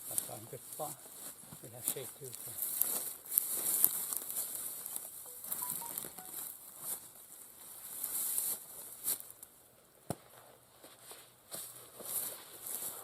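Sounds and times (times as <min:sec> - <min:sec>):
rustling and crinkling: 0:00.0 - 0:05.2, 0:10.2 - 0:13.0
faint short high tones: 0:05.3 - 0:06.4.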